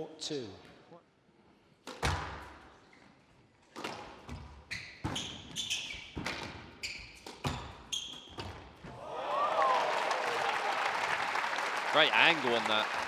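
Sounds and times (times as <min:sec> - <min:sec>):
shoes squeaking on court floor: 0:02.0 - 0:08.9
crowd applauding and cheering: 0:09.0 - 0:13.0.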